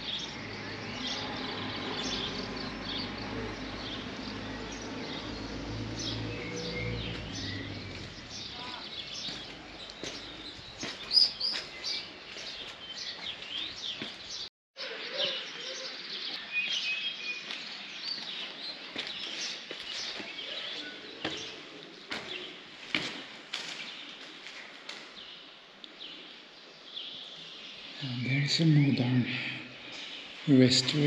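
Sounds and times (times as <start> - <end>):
small birds chirping: 0.0 - 31.0.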